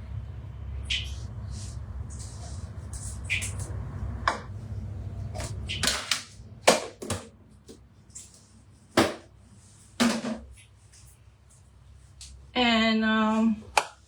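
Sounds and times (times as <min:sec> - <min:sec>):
low hum: 0:00.0 - 0:05.8.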